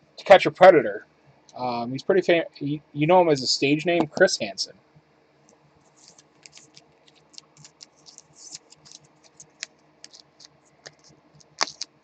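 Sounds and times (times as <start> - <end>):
cards in plastic sleeves shuffled: 5.9 - 12.0.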